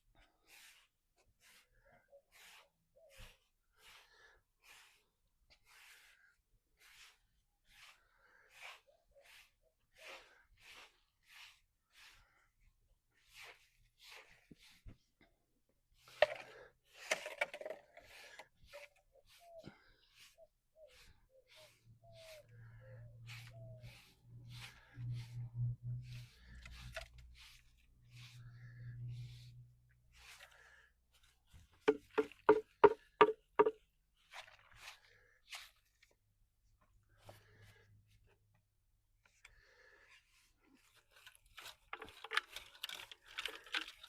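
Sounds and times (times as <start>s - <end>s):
scraping strokes: 16.0s - 33.7s
knocks: 31.9s - 33.8s.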